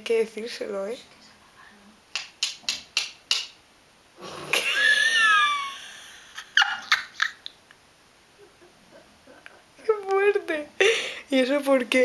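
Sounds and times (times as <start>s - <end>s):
loud exaggerated snore: 4.2s - 4.8s.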